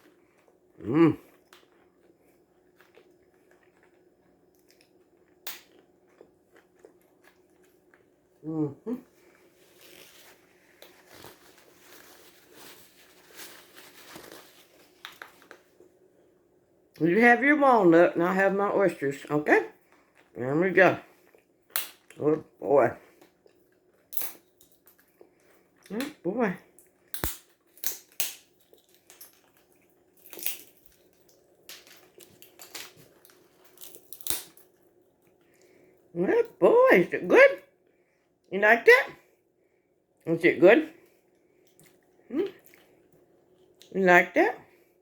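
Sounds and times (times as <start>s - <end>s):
food being chewed: 0.0s - 8.4s, 9.0s - 16.4s, 19.7s - 20.4s, 21.0s - 22.2s, 23.0s - 36.1s, 41.0s - 43.9s
pet cracking a walnut: 21.7s - 22.2s, 26.8s - 29.6s, 30.2s - 34.7s.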